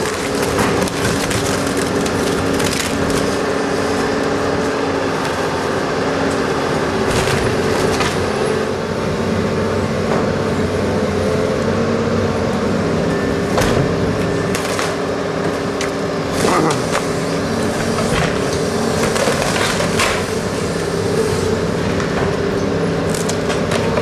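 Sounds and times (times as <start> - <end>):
timber cracking and splintering: 0.0 - 3.5, 23.1 - 24.0
demolition machinery running: 0.0 - 24.0.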